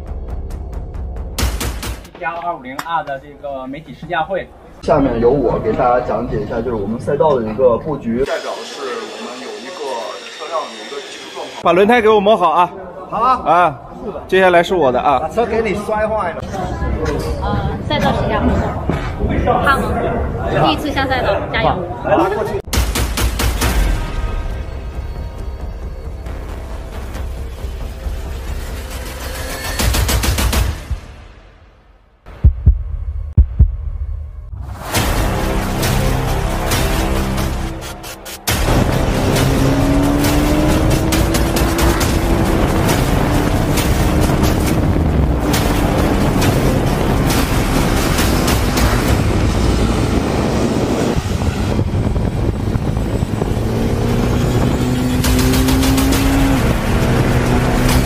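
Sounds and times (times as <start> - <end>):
heartbeat double thump: 32.3 - 34.6
motorcycle engine accelerating: 38.5 - 58.0.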